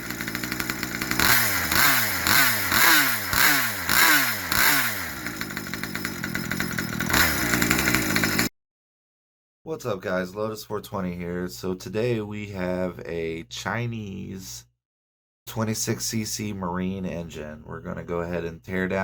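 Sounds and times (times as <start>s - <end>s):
two-stroke engine throttle blips: 0.0s - 8.5s.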